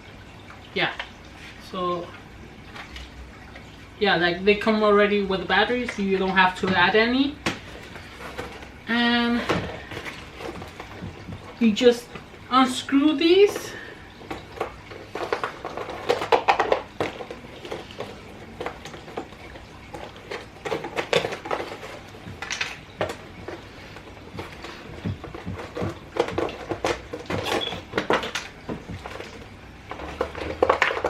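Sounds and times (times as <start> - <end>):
plastic packaging clicks and rattles: 13.4 - 31.0.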